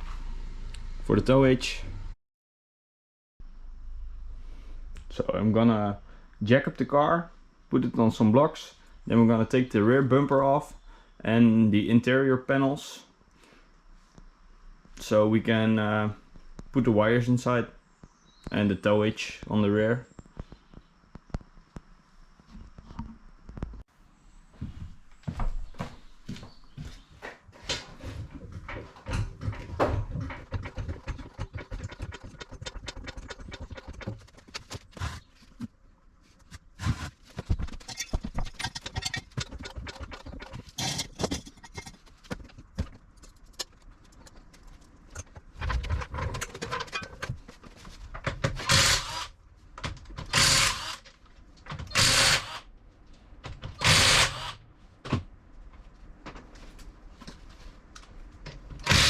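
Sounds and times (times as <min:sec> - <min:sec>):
tools and parts clunking: 0:27.5 - 0:35.7, 0:36.4 - 0:48.9.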